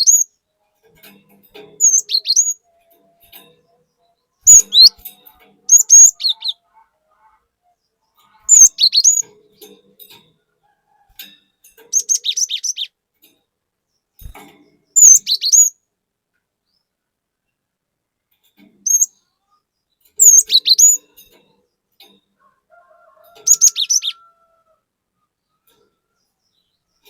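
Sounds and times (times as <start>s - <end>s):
bird singing rapid chirps: 0.0s - 0.4s, 1.8s - 6.9s, 7.7s - 9.8s, 11.8s - 13.0s, 14.0s - 15.8s, 18.8s - 21.0s, 23.4s - 24.2s.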